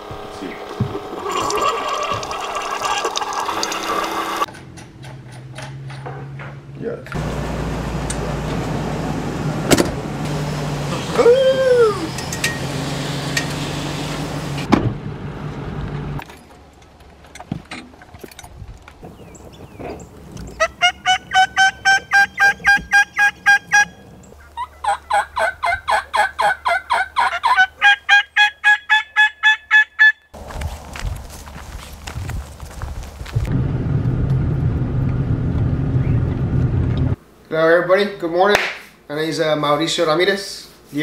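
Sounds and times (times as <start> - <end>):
turkey yelping: 20.5 - 30.3.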